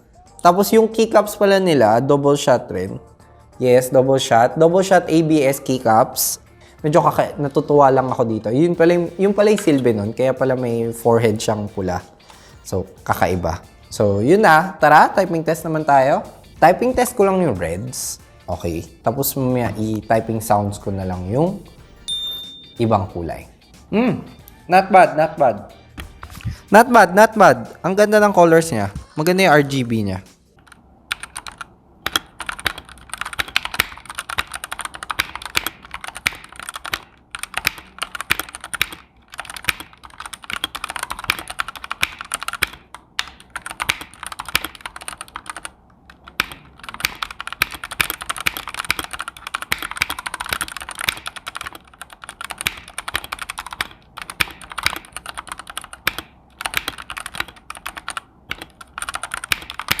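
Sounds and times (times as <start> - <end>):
fast typing on mechanical keyboard: 30.6 - 60.0.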